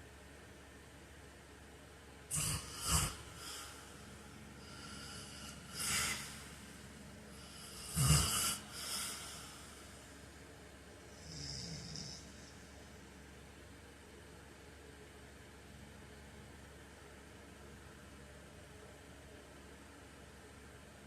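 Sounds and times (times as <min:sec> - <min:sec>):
man snoring: 0:02.3 - 0:06.6, 0:07.4 - 0:09.9, 0:11.1 - 0:12.5.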